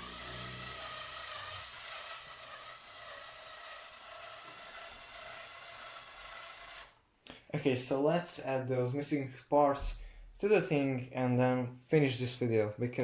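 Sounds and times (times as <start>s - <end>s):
toy train motor whirring: 0.0s - 7.0s.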